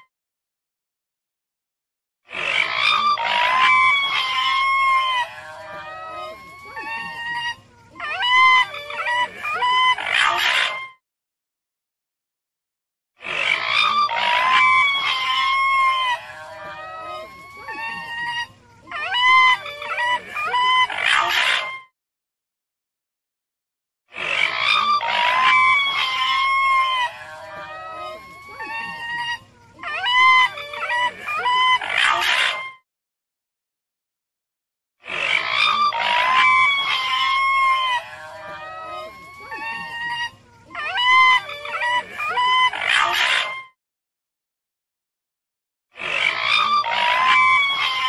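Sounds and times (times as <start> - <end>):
raccoon dog raspy call: 18.9 - 21.7, 24.1 - 29.0, 29.8 - 32.7, 35.0 - 43.6, 46.0 - 48.0.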